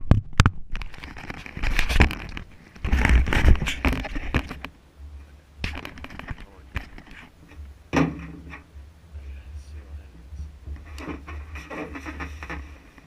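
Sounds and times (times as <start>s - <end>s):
rustling and scraping: 0.5s - 13.0s
clicks and knocks: 5.6s - 8.7s
low rumble: 6.4s - 11.7s.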